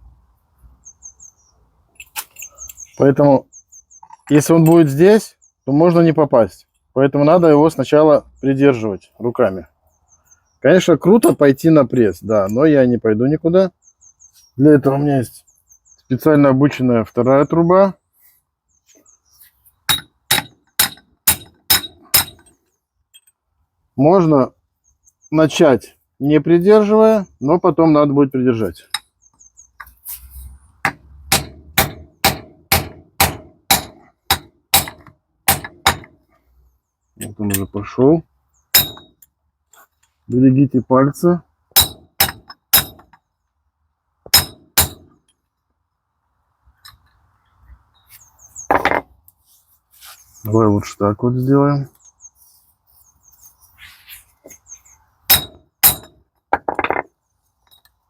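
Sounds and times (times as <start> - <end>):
hammer striking steel pipe: 19.9 - 22.4, 44.3 - 45.1, 55.3 - 56.2
hammer striking metal pipe: 19.9 - 22.5, 31.3 - 36.1, 38.8 - 39.1, 41.8 - 43.0, 44.3 - 45.1, 55.3 - 56.2.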